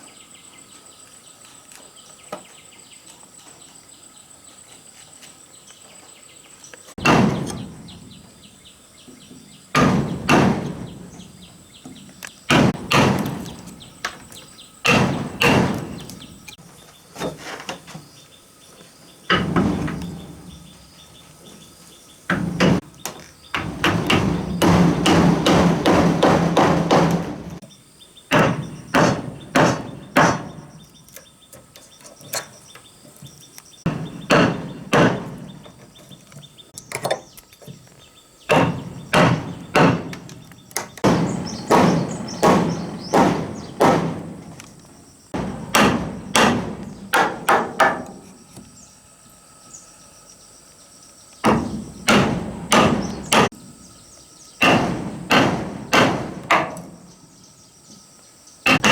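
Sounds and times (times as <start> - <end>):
tool striking wood: 7.0 - 8.1, 9.8 - 11.2, 11.9 - 16.6, 22.3 - 27.6, 28.3 - 30.8, 33.9 - 35.8, 38.5 - 44.7, 45.4 - 48.7, 51.4 - 53.6, 54.6 - 57.0, 58.7 - 58.9.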